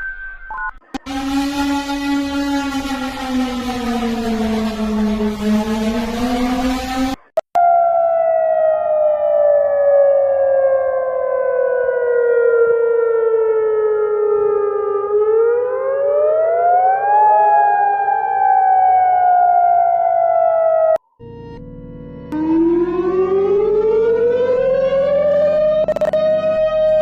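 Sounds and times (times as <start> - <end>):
warning siren wailing: 0.0 - 21.0, 22.3 - 27.0.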